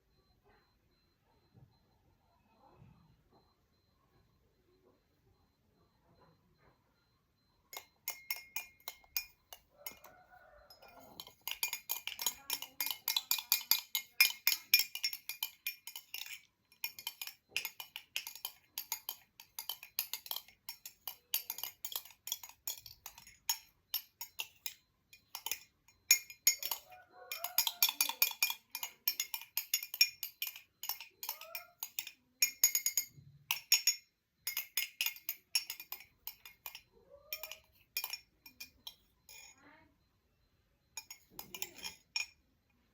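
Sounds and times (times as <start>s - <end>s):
metal spoon clinking in glass: 7.7s - 39.6s, 40.9s - 42.4s.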